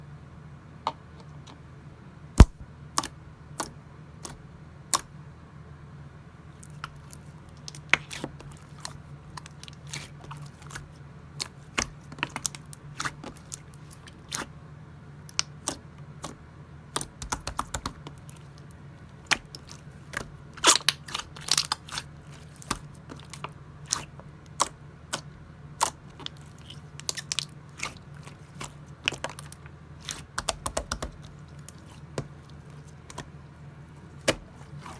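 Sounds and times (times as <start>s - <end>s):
steady low hum: 0.0s - 34.9s
slime clicking and popping: 2.4s - 3.1s, 17.0s - 18.4s, 25.8s - 32.4s.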